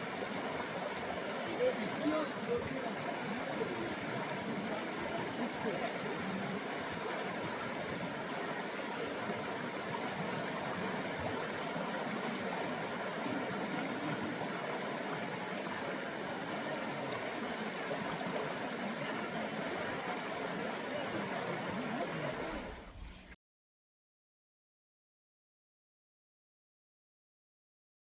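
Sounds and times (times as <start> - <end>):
stream water rushing: 0.0 - 23.2.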